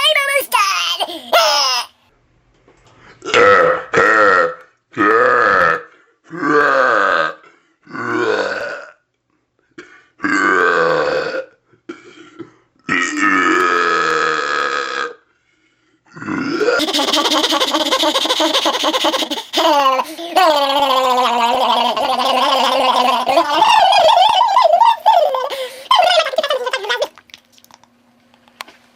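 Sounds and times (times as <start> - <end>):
person belching: 3.2 - 9.0, 10.2 - 12.0, 12.8 - 15.2, 16.1 - 16.9, 18.4 - 25.9.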